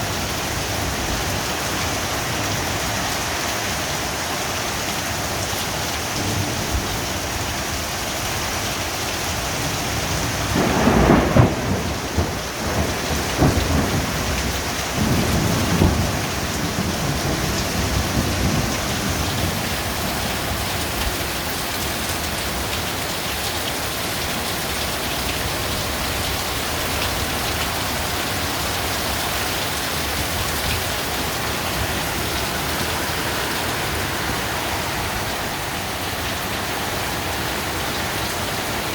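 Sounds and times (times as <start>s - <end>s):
heavy rain falling: 0.0s - 38.9s
rumbling thunder crack: 10.5s - 19.8s.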